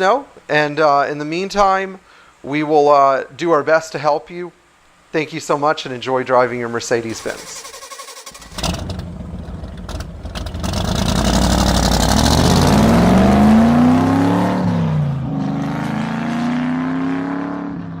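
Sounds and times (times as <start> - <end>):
car engine accelerating: 7.1 - 18.0.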